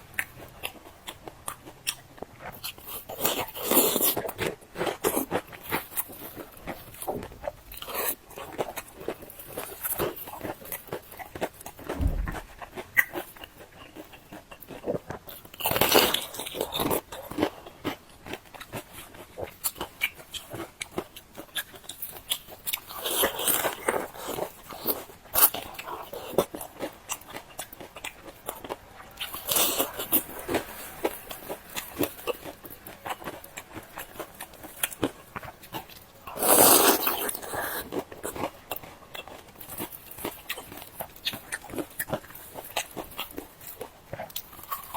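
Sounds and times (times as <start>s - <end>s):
wet chewing clicks: 31.8s - 44.9s
loud crunchy bites: 36.3s - 38.6s.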